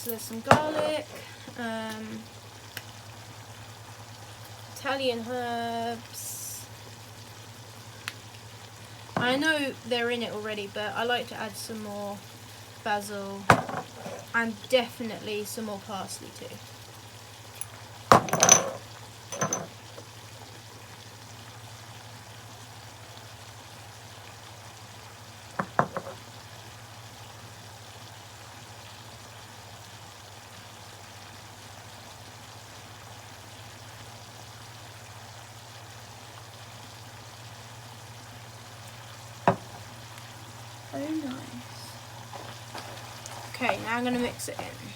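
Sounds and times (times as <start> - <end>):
seasoning containers knocking: 13.5 - 14.3, 25.6 - 26.2.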